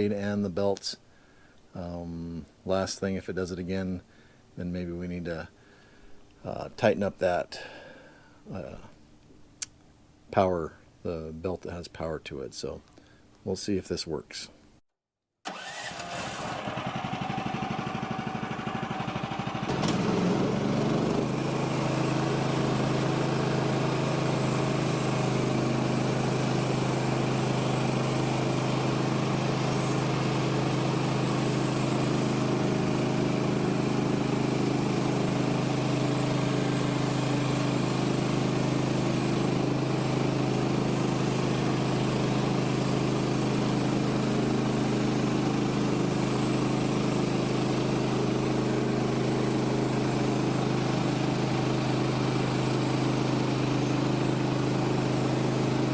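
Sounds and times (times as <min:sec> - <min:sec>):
sawmill engine running under load: 0:15.6 - 0:55.9.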